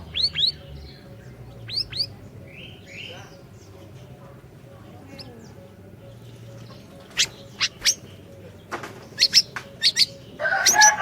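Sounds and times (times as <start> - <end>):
bird chirping: 0.0 - 11.0.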